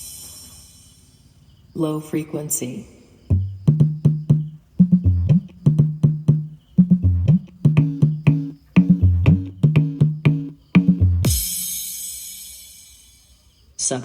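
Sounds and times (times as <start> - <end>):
plucked bass line: 3.3 - 11.8
cymbal crash: 11.2 - 13.4.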